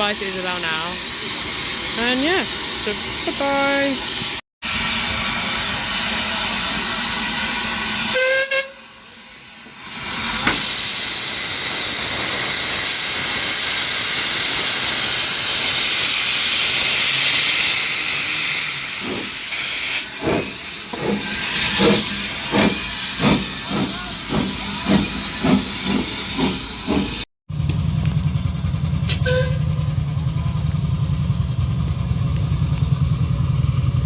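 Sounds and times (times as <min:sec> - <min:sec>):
steam locomotive hissing: 0:00.0 - 0:27.3
short irregular steam puffs: 0:09.7 - 0:27.3.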